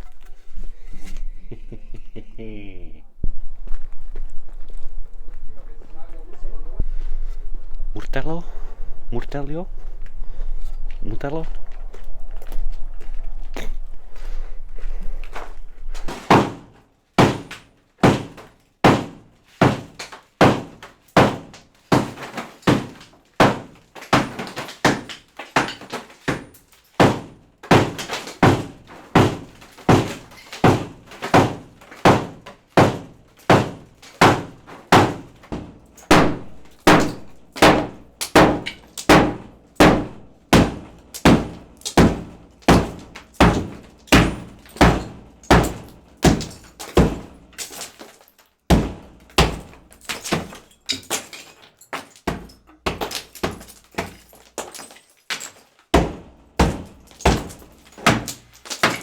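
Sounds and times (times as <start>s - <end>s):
brick crumbling: 15.3s - 59.0s.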